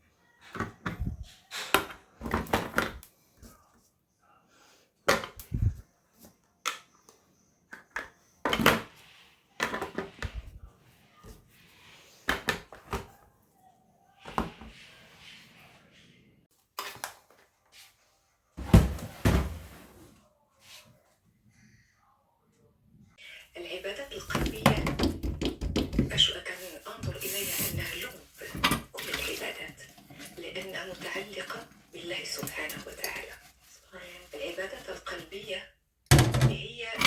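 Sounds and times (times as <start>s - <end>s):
kitchen items knocking and clattering: 0.5s - 3.1s, 9.6s - 10.6s, 18.6s - 20.0s, 24.2s - 33.3s, 36.1s - 37.0s.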